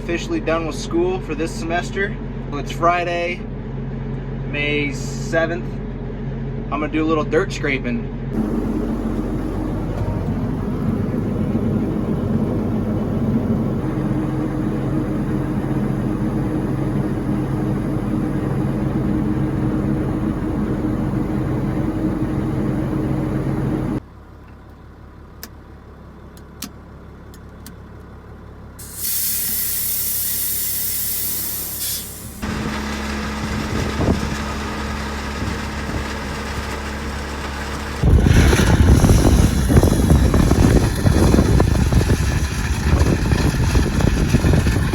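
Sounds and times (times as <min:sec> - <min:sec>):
heavy equipment engine running: 0:08.0 - 0:44.9
loud hiss: 0:28.8 - 0:32.4.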